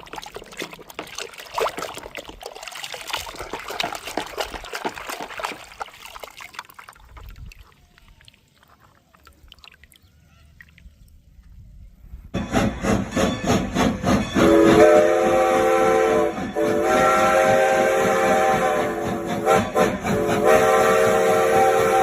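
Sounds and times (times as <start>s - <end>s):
train wheels clattering: 12.4s - 21.0s
multi-tone train horn: 12.5s - 22.0s.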